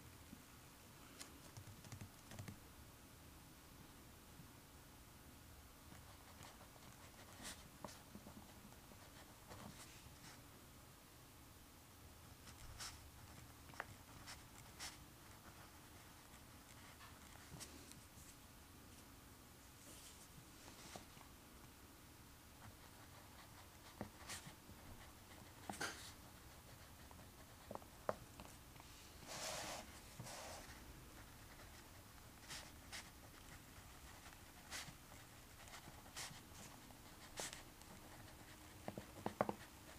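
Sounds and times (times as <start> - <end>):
room hiss: 0.0 - 39.9
pencil scratching on paper: 29.2 - 39.9.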